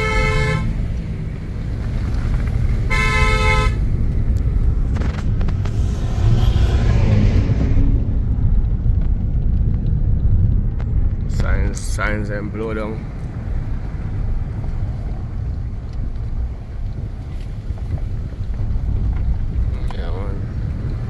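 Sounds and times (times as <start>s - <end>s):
car horn: 0.0s - 0.9s, 2.7s - 4.0s
car driving rumble: 0.0s - 21.0s.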